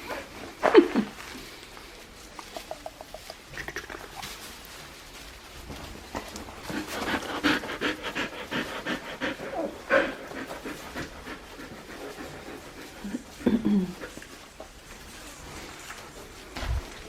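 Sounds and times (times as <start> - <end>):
puppy panting: 2.2 - 4.5, 6.1 - 16.5.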